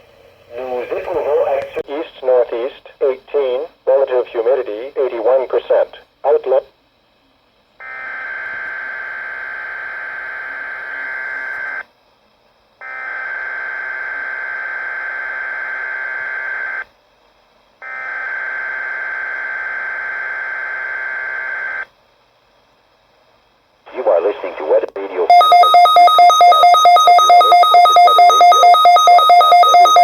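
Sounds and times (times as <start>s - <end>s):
buzzy warbling data tones: 25.3s - 30.0s.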